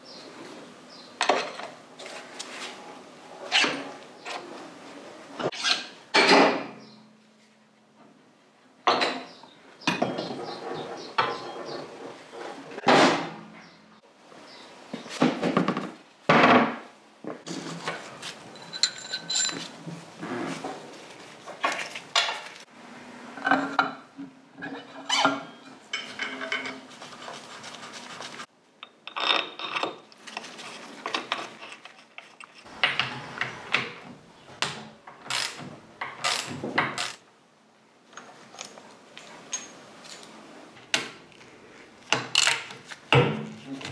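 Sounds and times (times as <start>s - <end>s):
metal parts clanking and scraping: 17.5s - 20.7s, 23.4s - 26.9s, 28.8s - 33.2s.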